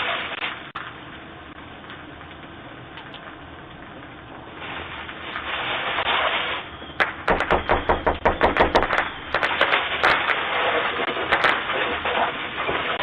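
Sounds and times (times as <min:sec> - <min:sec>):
rapid sharp knocks: 0:07.3 - 0:09.5.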